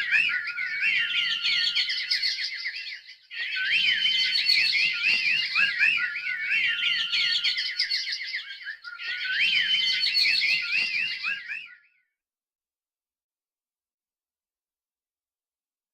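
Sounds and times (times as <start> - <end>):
songbirds chirping: 0.0 - 12.0.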